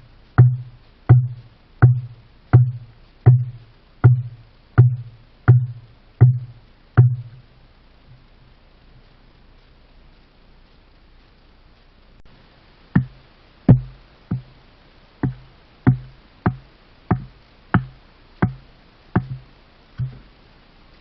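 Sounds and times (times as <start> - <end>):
hard blows on wood: 0.0 - 7.4, 13.0 - 14.6, 15.2 - 20.4.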